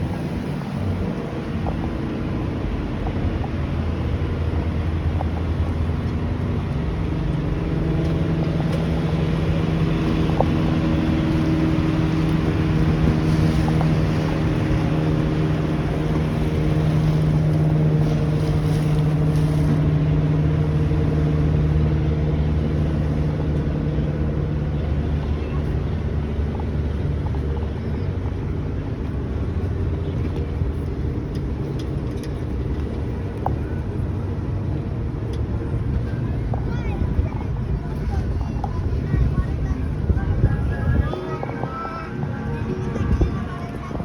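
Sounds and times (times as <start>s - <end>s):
water rushing: 0.0s - 25.2s
boat engine droning: 0.0s - 44.0s.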